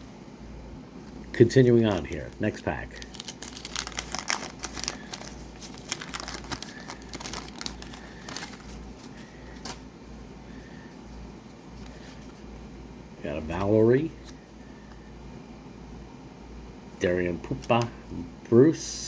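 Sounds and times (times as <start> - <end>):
wax paper wrapper crinkling: 1.6 - 9.9.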